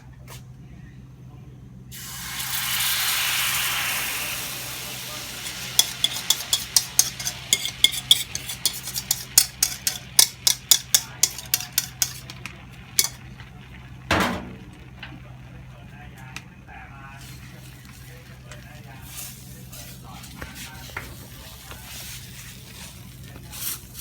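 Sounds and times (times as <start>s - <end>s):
hiss: 1.9s - 6.6s
utensil stirring in a pot: 2.0s - 14.0s, 17.1s - 24.0s.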